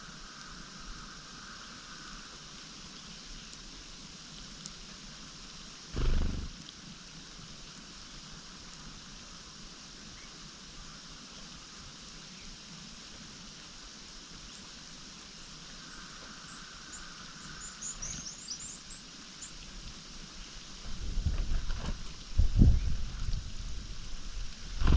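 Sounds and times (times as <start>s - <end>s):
outdoor background hiss: 0.0s - 24.9s
songbird high-pitched calls: 16.5s - 19.6s.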